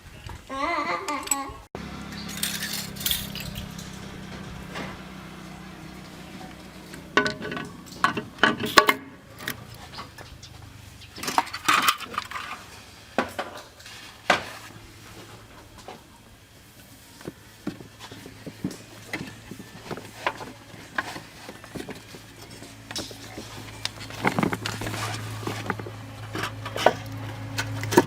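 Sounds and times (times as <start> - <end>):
clinks and knocks of hard objects: 2.1 - 5.0, 6.9 - 10.5, 11.1 - 14.4, 17.2 - 28.0.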